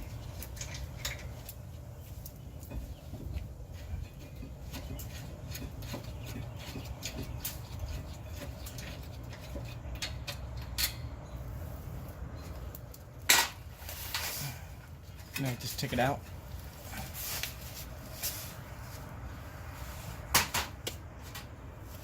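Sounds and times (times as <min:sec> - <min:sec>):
tools clicking and scraping: 0:00.1 - 0:01.6, 0:02.2 - 0:11.2.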